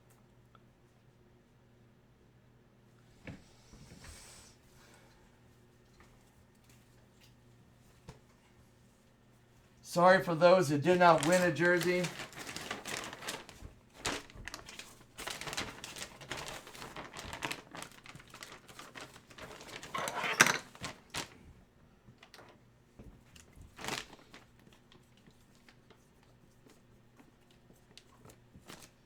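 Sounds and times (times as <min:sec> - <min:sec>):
plastic packaging crinkling: 0:10.0 - 0:21.4, 0:23.6 - 0:25.9.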